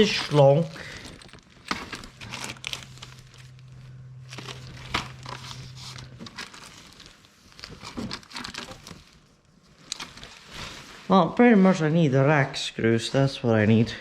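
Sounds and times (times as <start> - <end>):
plastic packaging crinkling: 0.0 - 11.0
low steady hum: 0.0 - 14.0.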